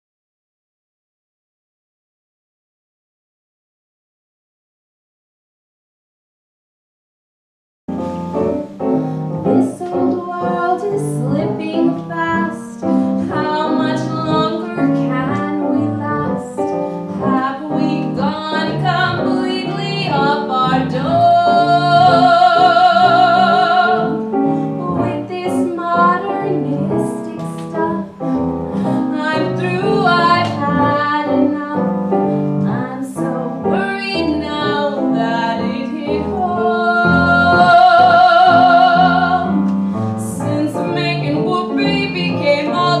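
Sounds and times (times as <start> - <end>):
piano accompaniment: 7.9 - 43.0
woman singing operatically: 9.5 - 16.6, 17.3 - 24.2, 24.8 - 28.1, 29.1 - 31.9, 32.6 - 39.5, 40.2 - 43.0.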